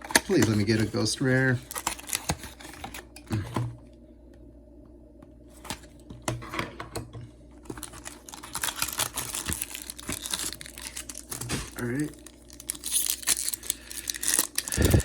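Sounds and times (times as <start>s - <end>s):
foil pack crinkling: 0.0s - 3.4s, 7.6s - 15.0s.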